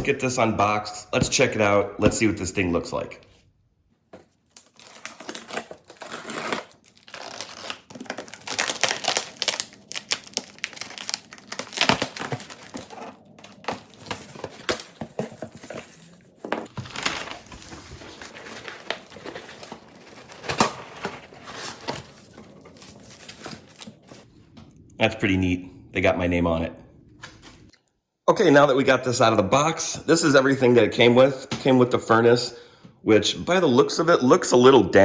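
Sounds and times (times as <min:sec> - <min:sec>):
packing material crinkling and tearing: 0:04.4 - 0:24.2
cardboard rustling and knocking: 0:11.7 - 0:23.6.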